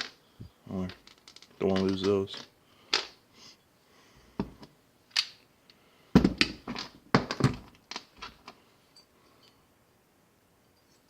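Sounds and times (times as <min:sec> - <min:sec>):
heavy thunks on hard surface: 0:06.2 - 0:07.7.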